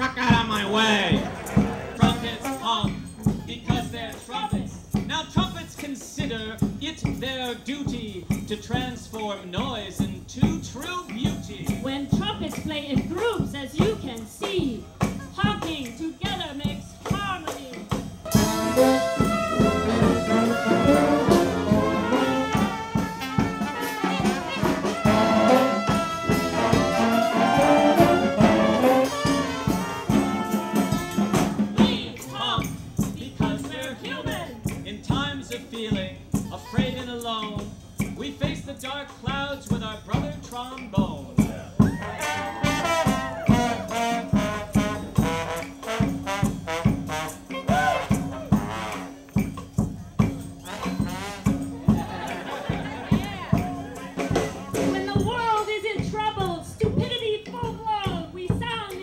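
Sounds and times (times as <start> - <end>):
trumpets and trombones: 0.0 - 3.1, 18.2 - 32.7, 42.0 - 49.4, 50.6 - 55.3
brass band playing: 0.0 - 5.8, 8.1 - 37.0, 41.4 - 56.2
percussion hits: 0.0 - 59.0
steady drum beat: 0.0 - 59.0.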